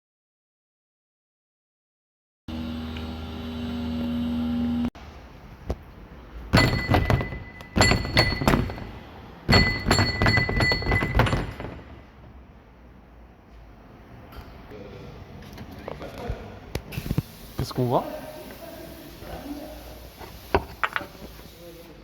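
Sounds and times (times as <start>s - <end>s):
metallic clattering with ringing note: 6.6s - 12.0s.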